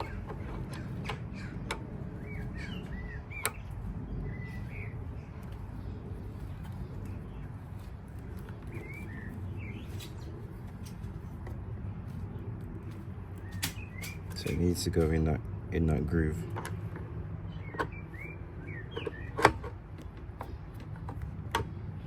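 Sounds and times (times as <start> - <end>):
bird chirps: 0.0 - 7.6, 8.5 - 10.3, 17.5 - 19.4.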